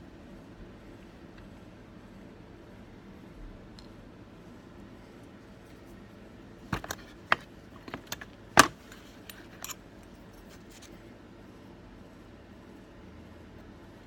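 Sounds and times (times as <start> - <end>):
metallic clicks and clinks: 6.8 - 9.8.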